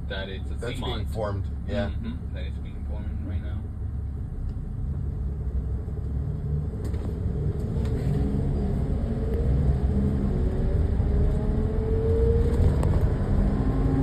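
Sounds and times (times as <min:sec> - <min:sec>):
car road noise rumble: 0:00.0 - 0:14.0.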